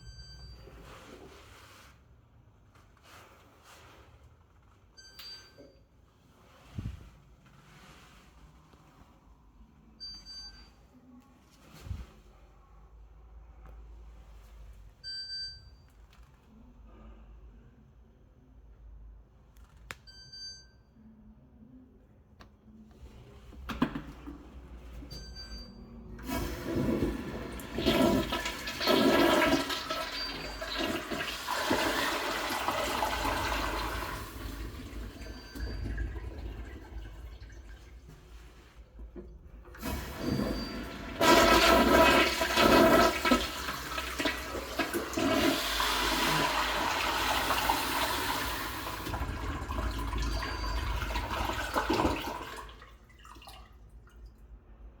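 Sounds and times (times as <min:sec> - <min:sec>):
toilet flushing: 0:26.1 - 0:54.2.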